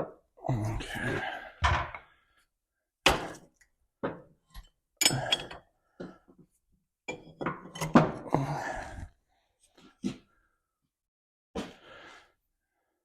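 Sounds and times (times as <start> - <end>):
metal tools clinking and knocking: 4.5 - 5.7, 7.1 - 8.1.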